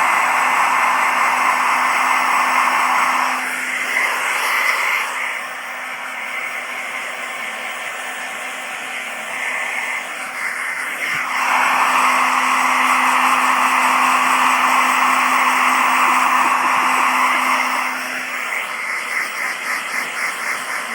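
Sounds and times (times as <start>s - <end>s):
hair dryer running: 0.0s - 20.9s.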